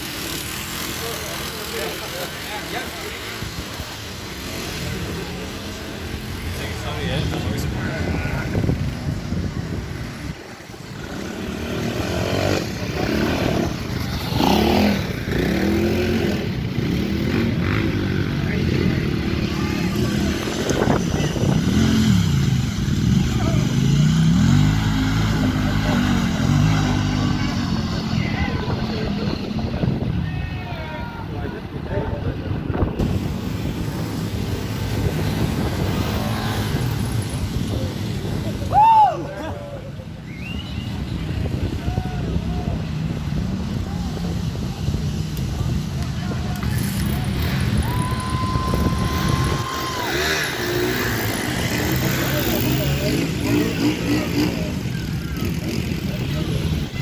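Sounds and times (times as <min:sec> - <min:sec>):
motorcycle engine revving: 0:10.8 - 0:30.0, 0:32.8 - 0:38.5, 0:44.2 - 0:57.0.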